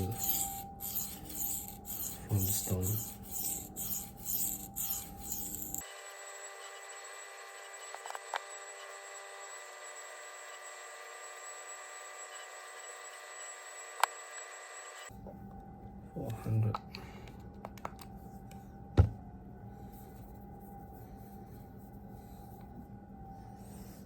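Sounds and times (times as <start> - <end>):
knife scraping on sharpening stone: 0.0 - 5.8
faint steady hum: 15.1 - 24.0.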